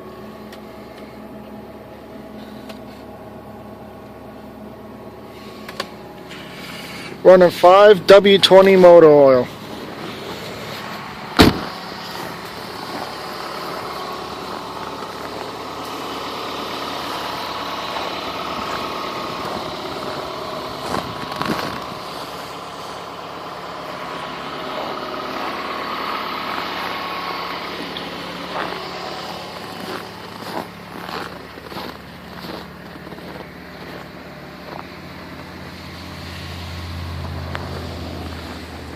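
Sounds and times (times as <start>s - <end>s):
car engine idling: 0.0s - 38.9s
engine knocks: 9.5s - 35.5s.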